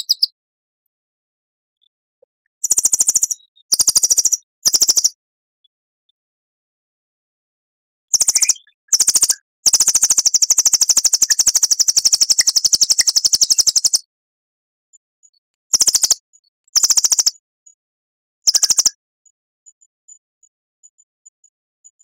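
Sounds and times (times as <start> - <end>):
songbird trilling: 8.2 - 14.0, 16.8 - 17.3, 18.5 - 18.9.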